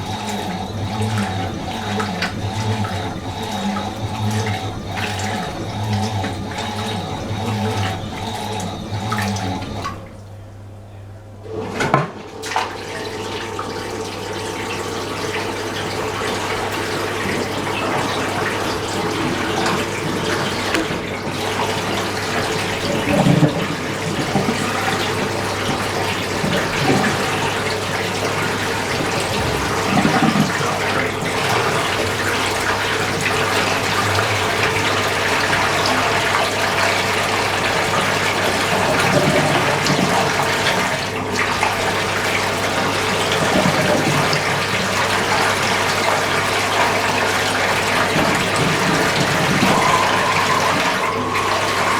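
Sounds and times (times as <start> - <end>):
constant low hum: 0.0 - 11.3
washing machine filling with water: 0.0 - 51.9.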